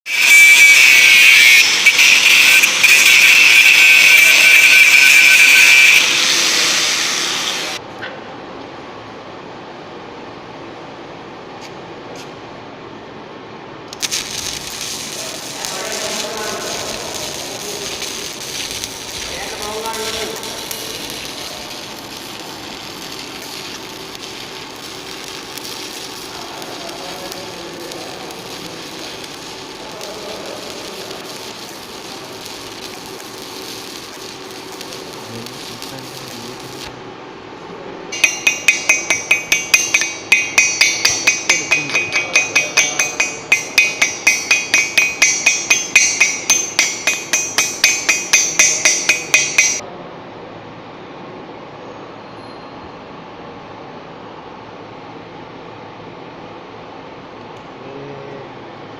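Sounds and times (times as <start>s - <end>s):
arc welding hiss: 0.1s - 7.8s, 13.9s - 37.0s, 38.2s - 49.8s
hammer striking metal pipe: 38.2s - 49.8s.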